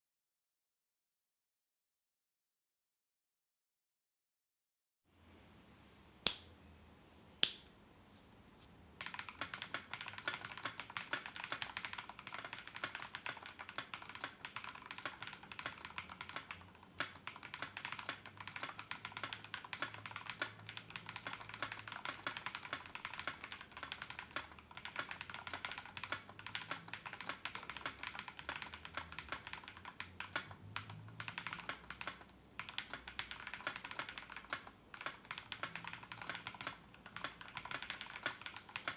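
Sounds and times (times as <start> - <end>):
keyboard typing: 9.0 - 38.9.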